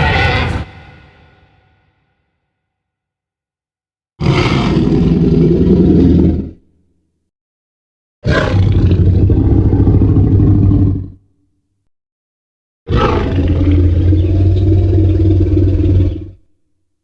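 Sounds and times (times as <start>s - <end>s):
monster roar: 4.2s - 6.6s.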